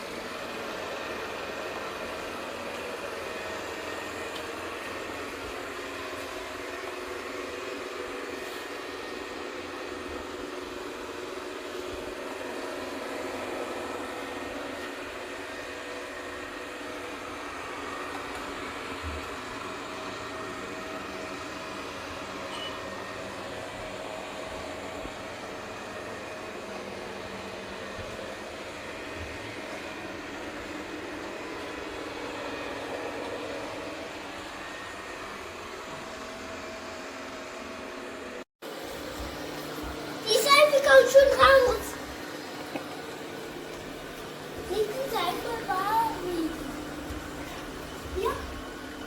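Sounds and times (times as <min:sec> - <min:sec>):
robot vacuum motor hum: 0:38.7 - 0:49.0.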